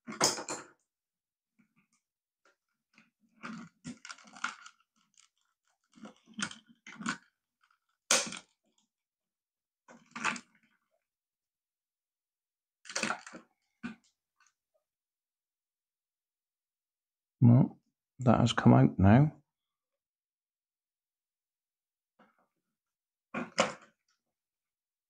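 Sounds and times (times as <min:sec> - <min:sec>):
plastic crunching and cracking: 0:02.9 - 0:08.9, 0:09.9 - 0:10.9, 0:12.8 - 0:14.5.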